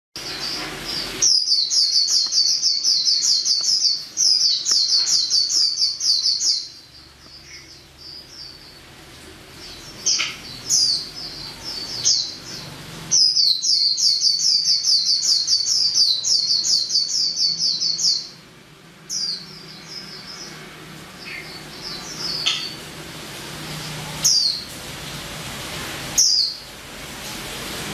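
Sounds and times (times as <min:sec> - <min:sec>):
bird twittering song: 0:00.2 - 0:08.9, 0:09.6 - 0:18.4, 0:19.1 - 0:22.8, 0:24.2 - 0:24.7, 0:26.2 - 0:26.6.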